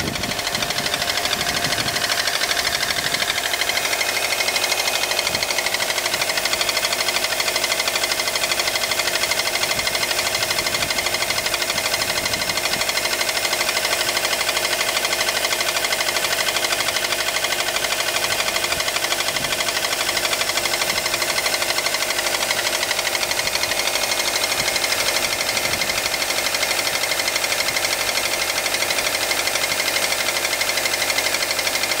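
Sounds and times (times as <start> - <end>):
car engine running cold: 0.0 - 32.0
rapid engine knocking: 0.0 - 32.0.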